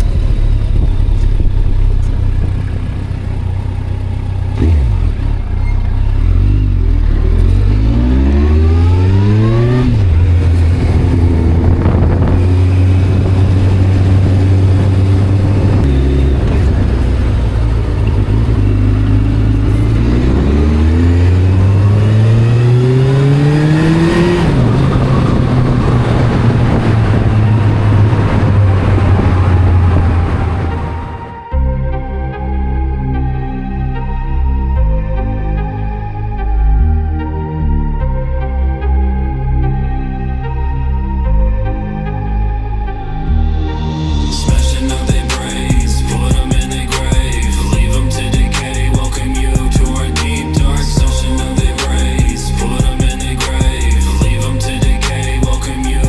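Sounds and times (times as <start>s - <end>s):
motorcycle engine accelerating: 0.0s - 31.8s, 43.4s - 56.0s.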